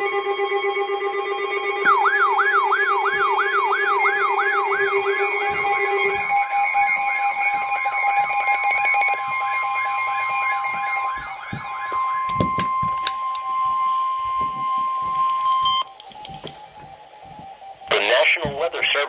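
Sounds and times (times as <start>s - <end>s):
two-tone alarm: 0.0s - 19.0s
clicks: 14.4s - 16.8s.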